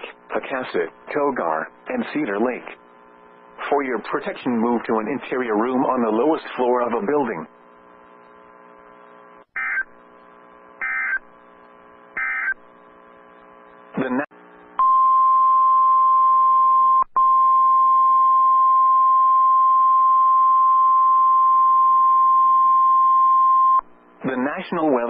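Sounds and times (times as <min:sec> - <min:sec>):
faint receiver hum: 0:00.0 - 0:25.0
steady high alarm tone: 0:10.8 - 0:11.2, 0:12.2 - 0:12.6.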